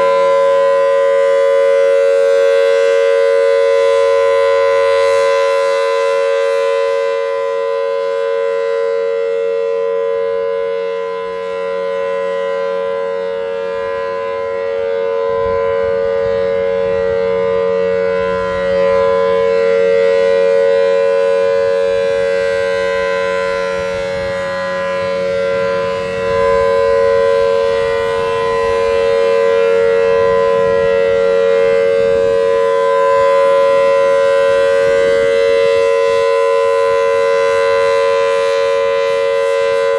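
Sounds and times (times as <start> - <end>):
steady warning siren tone: 0.0 - 39.9.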